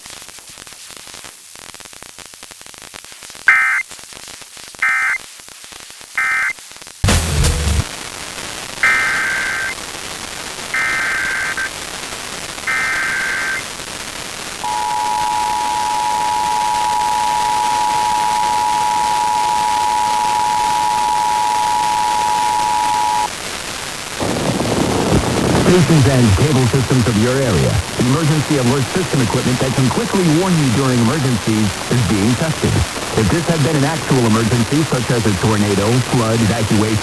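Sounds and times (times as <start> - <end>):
static hiss: 0.0 - 37.0
buzzy digital header bursts: 14.6 - 23.3
two-tone attention signal: 14.7 - 23.3.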